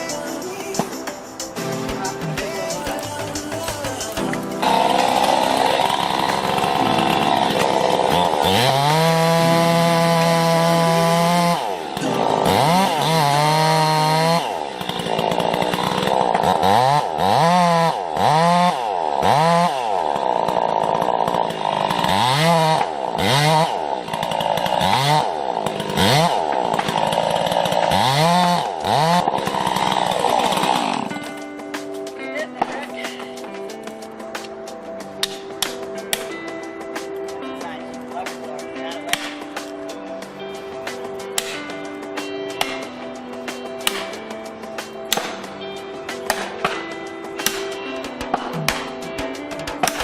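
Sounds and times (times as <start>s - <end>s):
chainsaw revving: 1.6s - 33.6s.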